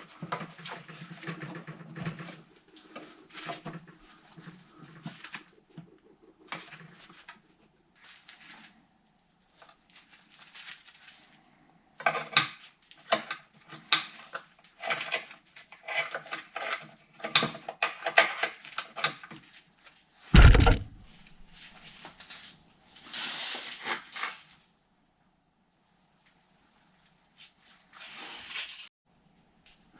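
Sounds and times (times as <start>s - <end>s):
heavy thud: 20.4s - 21.4s.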